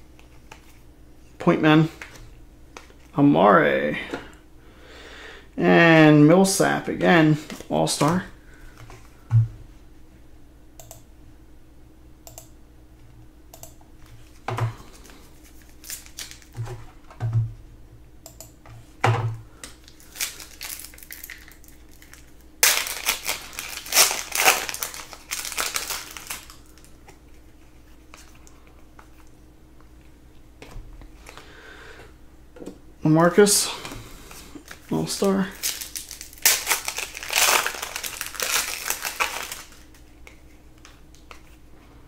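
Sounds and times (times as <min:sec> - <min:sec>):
foil wrapper crinkling: 0:14.2 - 0:16.6, 0:19.7 - 0:27.6, 0:34.6 - 0:40.4.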